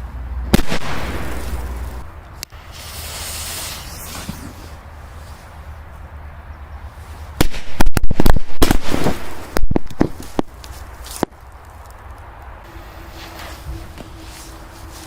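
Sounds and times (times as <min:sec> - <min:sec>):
firecrackers exploding: 0:00.5 - 0:04.8, 0:07.4 - 0:10.6.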